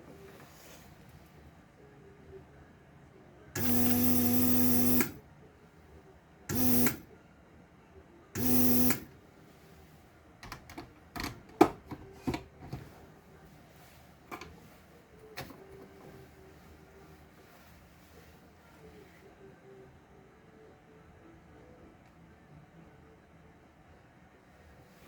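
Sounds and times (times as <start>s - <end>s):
electric screwdriver whirring: 3.6s - 5.2s, 6.5s - 7.0s, 8.4s - 9.1s.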